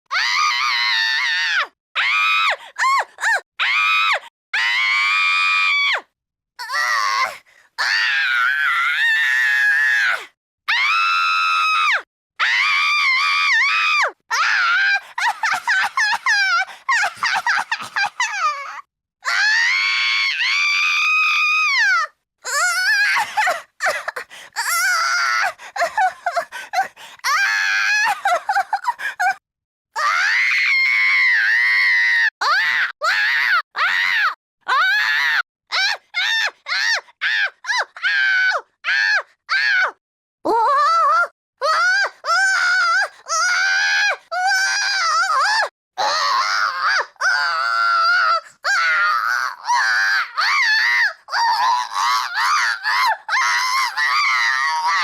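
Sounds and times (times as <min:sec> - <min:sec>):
long held scream: 0:03.6 - 0:17.6, 0:19.2 - 0:23.4, 0:30.0 - 0:40.0, 0:41.7 - 0:55.0.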